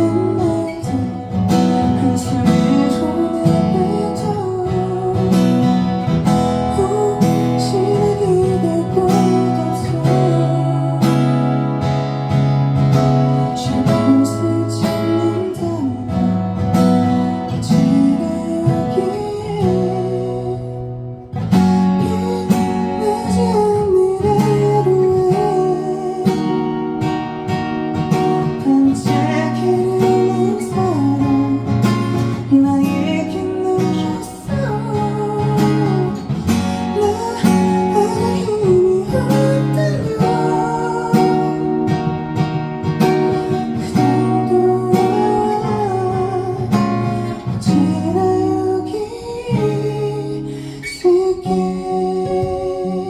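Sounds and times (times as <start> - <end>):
band music with acoustic guitar: 0.0 - 53.0.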